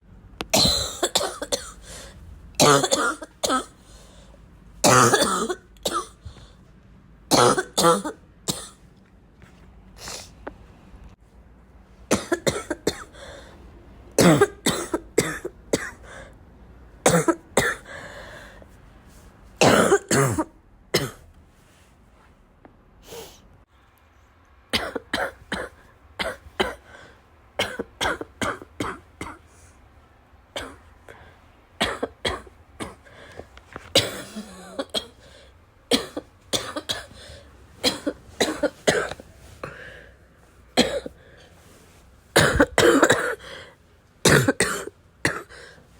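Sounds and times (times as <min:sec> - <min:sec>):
person wet chesty coughing: 0:00.5 - 0:01.9, 0:02.6 - 0:03.8, 0:04.8 - 0:06.2, 0:07.3 - 0:08.8, 0:12.1 - 0:13.1, 0:14.2 - 0:16.0, 0:17.1 - 0:17.9, 0:19.6 - 0:21.2, 0:24.8 - 0:26.8, 0:31.8 - 0:33.0, 0:34.0 - 0:35.2, 0:35.9 - 0:39.8, 0:40.8 - 0:41.2, 0:42.4 - 0:43.6, 0:44.2 - 0:45.7.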